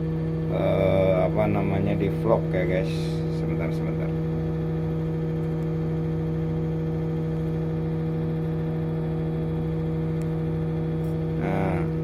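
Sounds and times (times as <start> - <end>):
diesel engine idling: 0.0 - 8.5.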